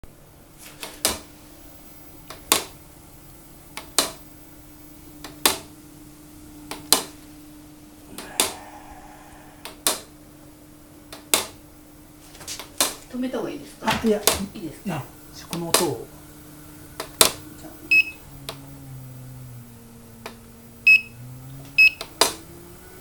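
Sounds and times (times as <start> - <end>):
machine humming: 0.0 - 23.0
machine clicking: 11.1 - 11.6.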